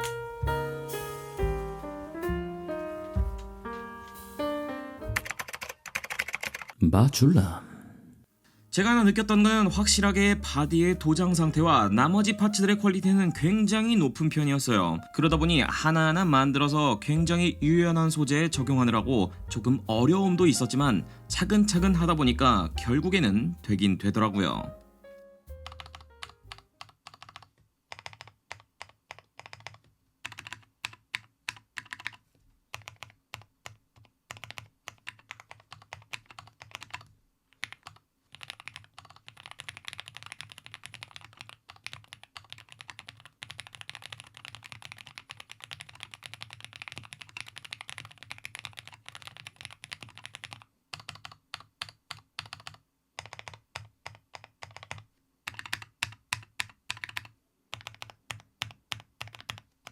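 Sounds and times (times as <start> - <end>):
mechanical keyboard typing: 5.1 - 6.8, 25.6 - 59.9.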